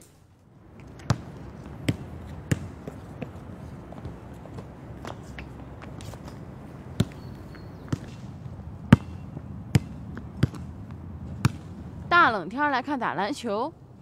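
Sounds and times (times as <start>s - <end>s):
basketball bouncing on court: 1.0s - 3.3s, 7.0s - 8.2s, 8.9s - 10.7s, 11.3s - 11.7s.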